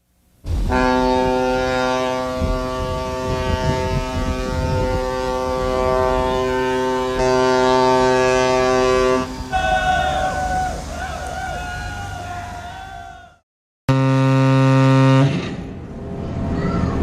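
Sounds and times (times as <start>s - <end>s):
ship's horn deep blast: 0.5s - 15.8s.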